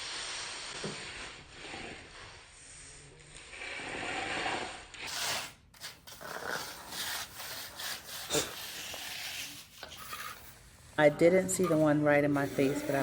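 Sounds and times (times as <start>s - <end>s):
tool scraping fresh concrete: 3.4s - 10.6s, 11.3s - 13.0s.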